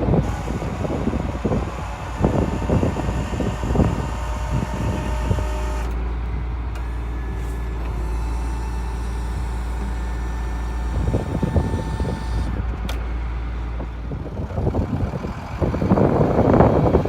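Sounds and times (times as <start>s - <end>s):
thin whine: 0.0s - 6.0s, 6.7s - 12.6s
diesel engine running: 0.0s - 17.0s.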